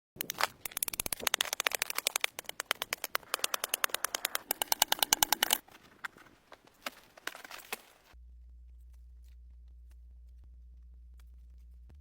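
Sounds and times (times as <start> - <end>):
campfire crackling and popping: 0.2 - 8.2.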